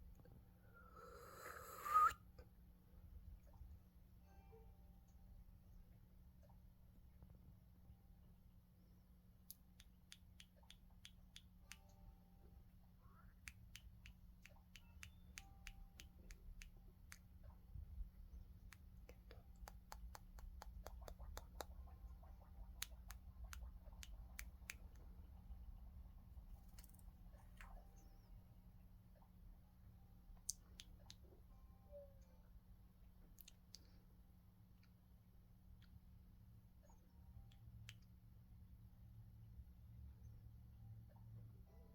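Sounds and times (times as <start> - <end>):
low steady hum: 0.0 - 41.9
parrot beak clicking: 9.5 - 11.9, 13.4 - 17.3, 18.6 - 25.1.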